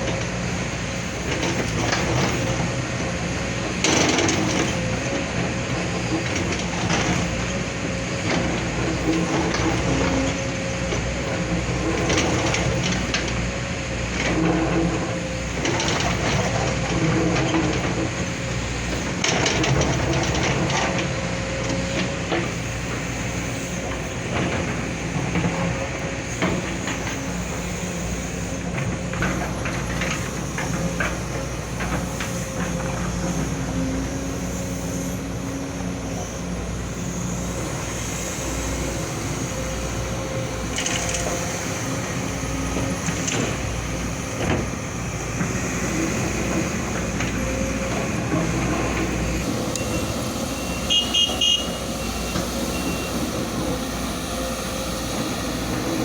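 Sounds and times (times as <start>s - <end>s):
constant whine: 0.0s - 56.0s
excavator diesel engine running: 0.0s - 56.0s.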